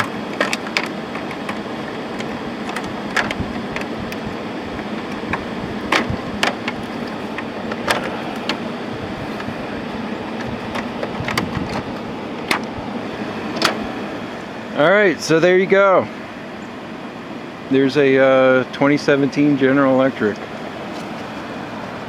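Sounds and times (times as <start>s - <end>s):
air conditioner running: 0.0s - 22.0s.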